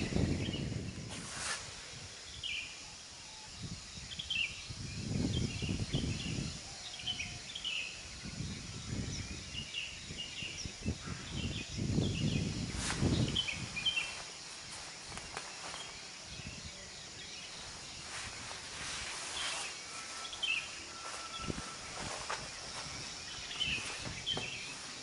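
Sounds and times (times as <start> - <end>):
birds chirping: 0.0 - 25.0.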